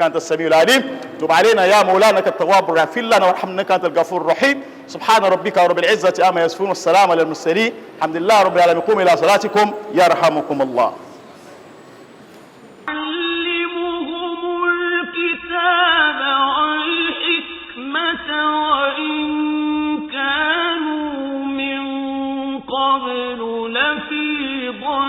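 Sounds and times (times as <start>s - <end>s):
person chanting melismatically: 0.0s - 11.2s.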